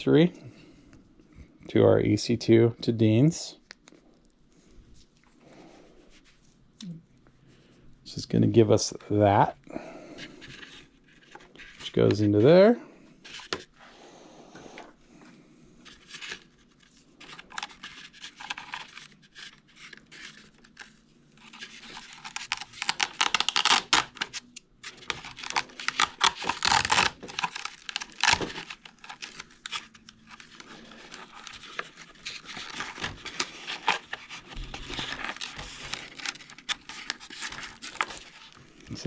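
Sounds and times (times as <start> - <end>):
plastic parts rustling and clicking: 17.2 - 38.9.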